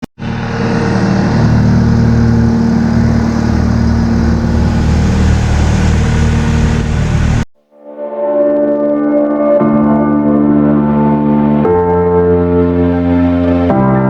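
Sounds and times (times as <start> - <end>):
farm machine engine running: 0.2 - 7.5.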